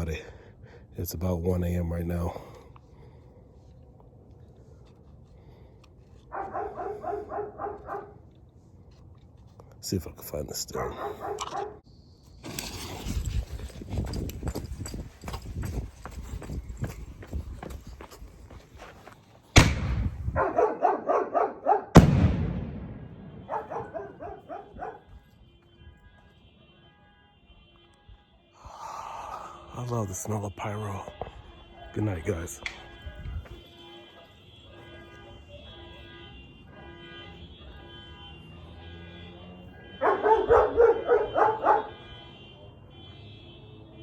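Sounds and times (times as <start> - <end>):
dogs barking: 6.2 - 8.2, 10.8 - 11.8, 20.3 - 22.0, 23.4 - 25.2, 39.8 - 42.2
loud firework bang: 19.6 - 20.2, 22.0 - 23.6
car alarms pulsing electronic tones: 23.0 - 28.6, 29.7 - 44.0.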